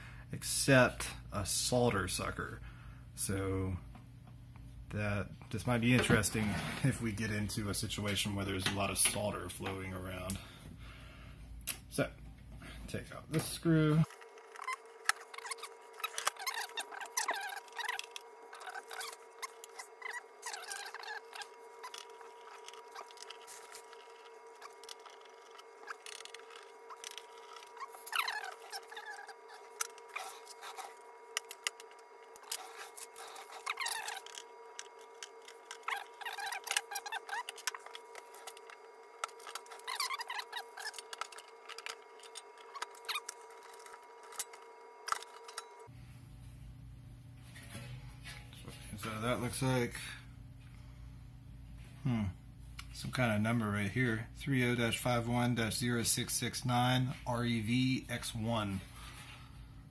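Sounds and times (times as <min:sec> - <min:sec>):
screws squeaking as they turn: 0:14.1 - 0:45.8.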